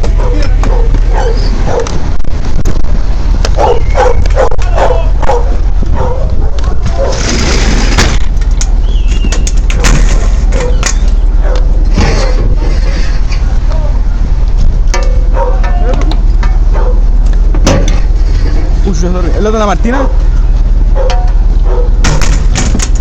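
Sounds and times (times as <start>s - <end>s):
engine droning: 0.0s - 23.0s
dog barking: 0.1s - 2.0s, 3.6s - 7.2s, 10.5s - 10.8s, 11.4s - 12.7s, 15.3s - 15.9s, 16.7s - 17.0s, 20.9s - 22.0s.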